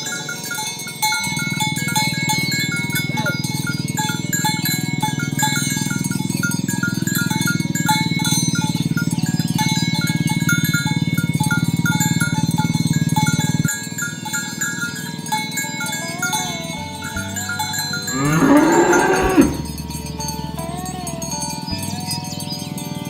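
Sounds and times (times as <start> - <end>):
cow mooing: 18.1 - 19.7.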